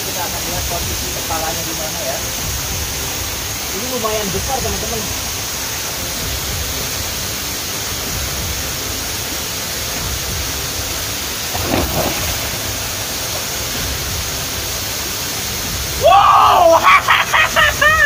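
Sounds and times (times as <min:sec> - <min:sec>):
waterfall rushing: 0:00.0 - 0:18.0.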